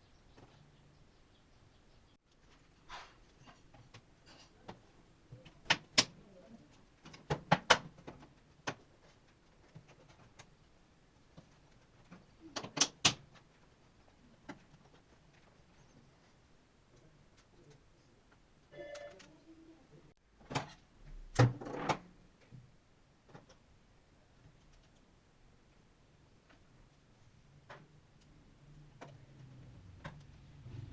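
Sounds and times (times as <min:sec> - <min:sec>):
clicks and knocks of laptop parts: 0:05.4 - 0:06.2, 0:07.0 - 0:10.5.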